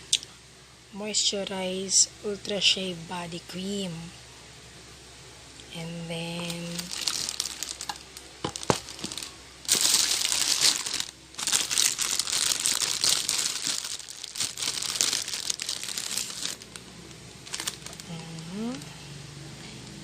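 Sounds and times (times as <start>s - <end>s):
packaging crinkling: 6.4s - 18.8s.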